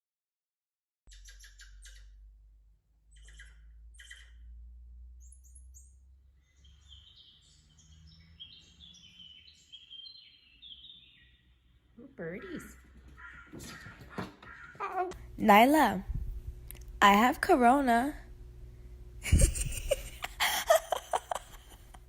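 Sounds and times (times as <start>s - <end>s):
small birds chirping: 1.1s - 2.3s, 3.1s - 15.4s, 19.3s - 21.9s.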